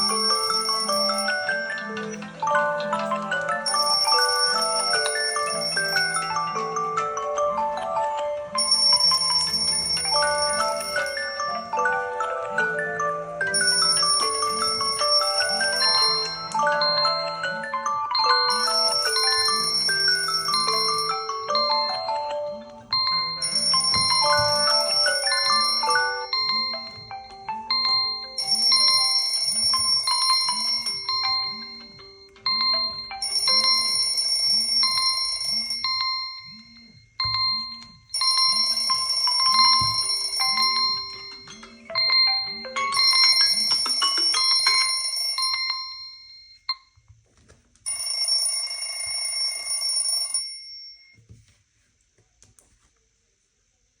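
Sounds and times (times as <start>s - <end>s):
chime-like melodies: 0.0s - 47.0s
electronic beeps: 8.6s - 47.0s.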